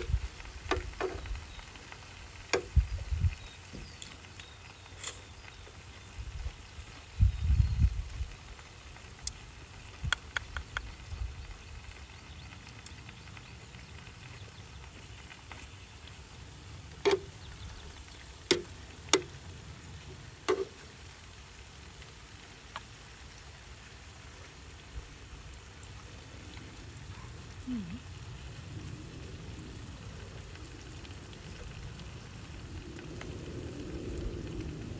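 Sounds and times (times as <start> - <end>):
food sizzling on a grill: 0.0 - 34.9
utensils clacking against grill: 20.5 - 20.8.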